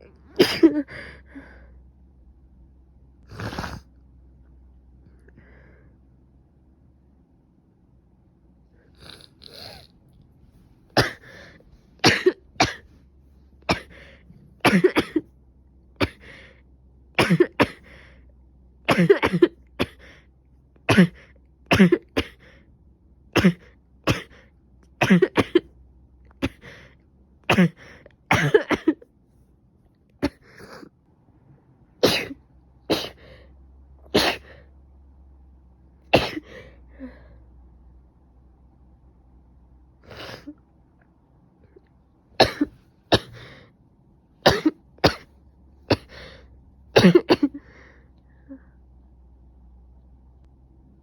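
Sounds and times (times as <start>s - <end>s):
person coughing: 0.0s - 1.2s, 11.0s - 12.9s, 13.7s - 15.3s, 16.0s - 16.4s, 17.2s - 17.9s, 18.9s - 20.1s, 20.9s - 22.5s, 23.4s - 24.4s, 25.0s - 25.7s, 26.4s - 26.8s, 27.5s - 29.0s, 30.2s - 30.9s, 32.0s - 33.2s, 34.1s - 34.6s, 36.2s - 36.7s, 42.4s - 43.6s, 44.4s - 45.3s, 45.9s - 46.4s, 47.0s - 47.7s.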